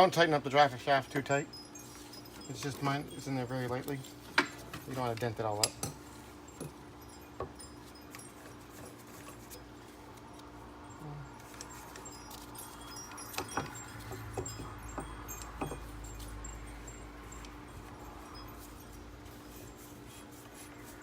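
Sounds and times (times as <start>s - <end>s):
faint hum: 0.4s - 14.0s.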